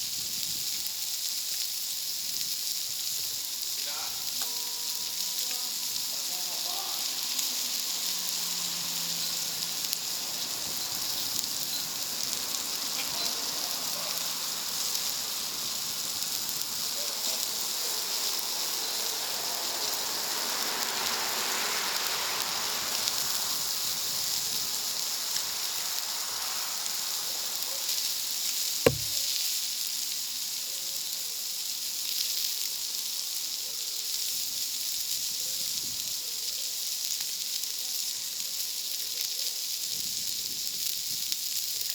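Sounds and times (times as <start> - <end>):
food sizzling on a griddle: 0.0 - 41.9
sharp knock: 28.9 - 29.2.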